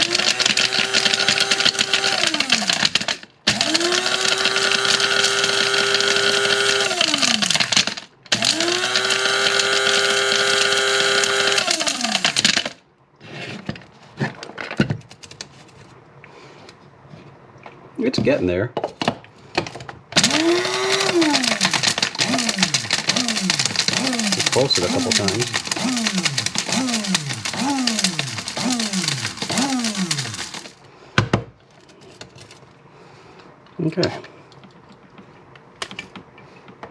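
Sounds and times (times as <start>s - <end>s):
coffee grinder motor whining: 0.0s - 12.7s, 20.2s - 30.8s.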